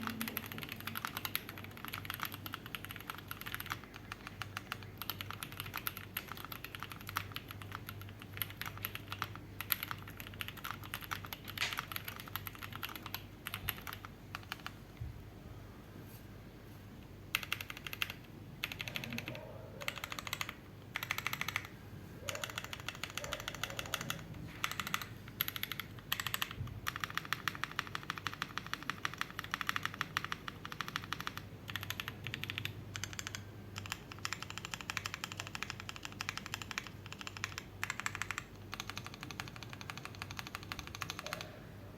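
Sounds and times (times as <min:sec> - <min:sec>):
mechanical keyboard typing: 0:00.0 - 0:14.8, 0:17.3 - 0:41.6.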